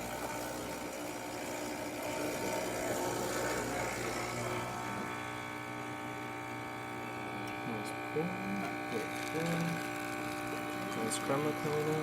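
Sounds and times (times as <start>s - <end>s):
espresso machine pump humming: 0.0s - 12.0s.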